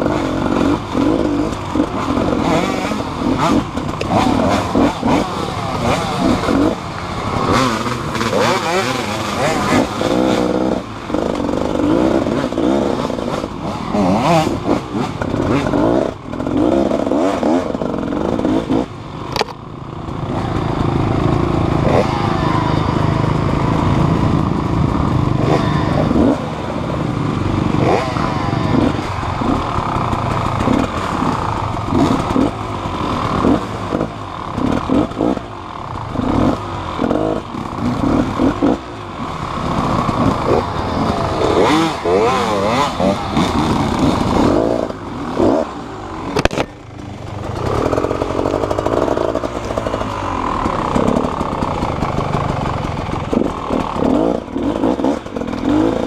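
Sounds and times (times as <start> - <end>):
small motorcycle engine revving: 0.0 - 56.0
sharp clicks and clatters: 14.0 - 22.0, 28.9 - 38.8, 46.3 - 56.0.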